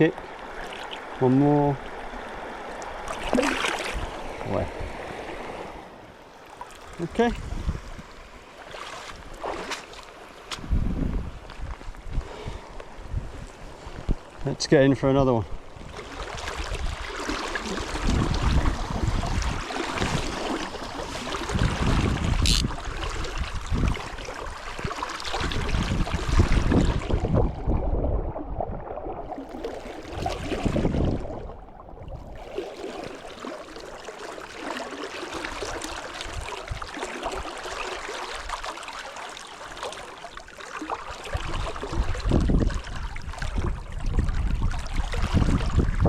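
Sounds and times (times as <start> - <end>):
rushing river water: 0.0 - 10.7, 12.1 - 28.2, 29.0 - 46.0
wind buffeting microphone: 7.0 - 8.2, 10.5 - 32.5, 41.3 - 46.0.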